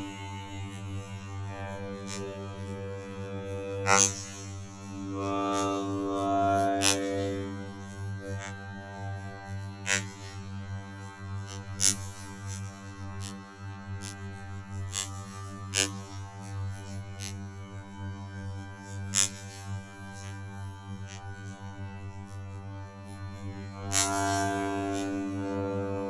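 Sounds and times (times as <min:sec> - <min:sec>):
low droning hum: 0:00.0 - 0:09.5.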